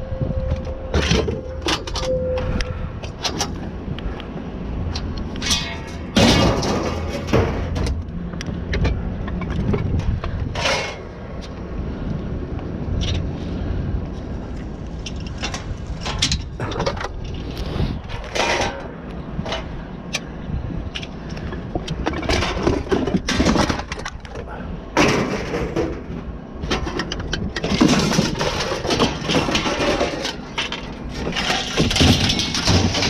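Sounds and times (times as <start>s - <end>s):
low engine rumble: 0.0s - 33.0s
knocks and rattles: 4.9s - 11.5s, 15.0s - 20.3s, 20.9s - 33.0s.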